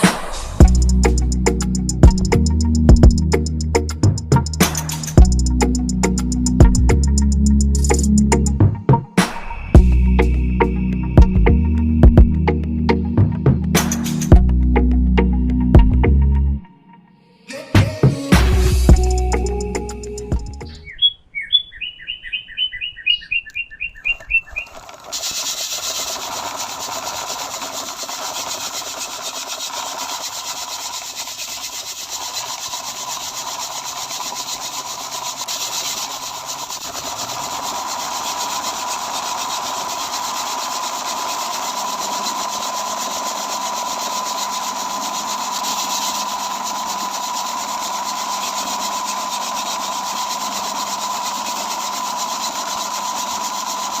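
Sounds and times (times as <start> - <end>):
small motor whining: 0.0 - 8.5, 13.3 - 14.6, 18.3 - 20.9, 24.2 - 54.0
quick repeated chirps: 0.0 - 13.1, 18.9 - 26.1.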